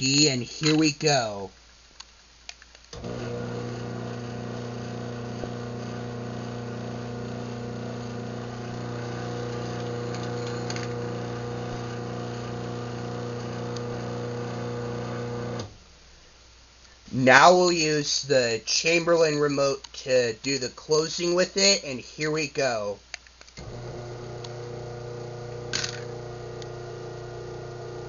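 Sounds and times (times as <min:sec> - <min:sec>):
garage door opener motor hum: 0:03.0 - 0:15.8, 0:23.6 - 0:28.0.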